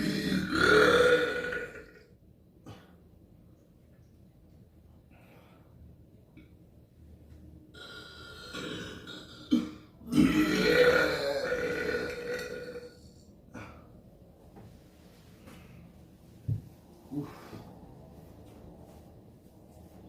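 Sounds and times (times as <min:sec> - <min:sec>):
person burping: 0:00.0 - 0:02.1, 0:07.8 - 0:13.9.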